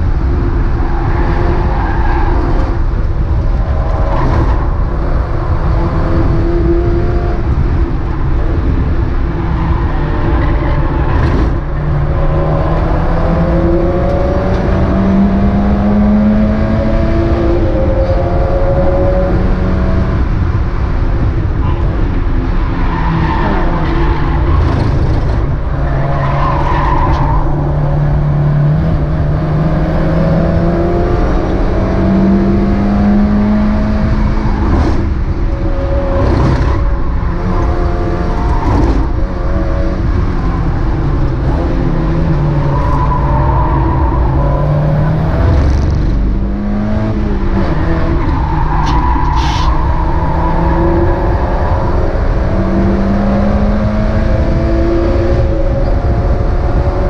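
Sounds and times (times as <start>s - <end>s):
tyre and road noise: 0.0s - 57.0s
race car engine revving: 22.9s - 57.0s.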